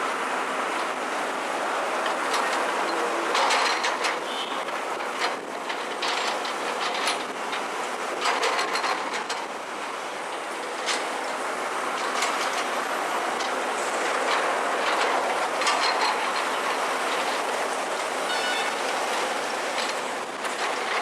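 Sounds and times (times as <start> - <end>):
heavy machinery rattling: 1.8 - 4.3, 4.9 - 9.5, 10.3 - 21.0
high squeal: 18.3 - 18.8.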